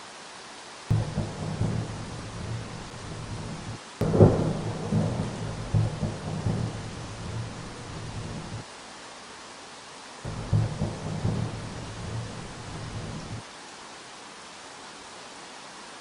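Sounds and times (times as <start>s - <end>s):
rain hiss: 0.0s - 16.0s
thunder rumbling: 0.9s - 8.6s, 10.3s - 13.4s.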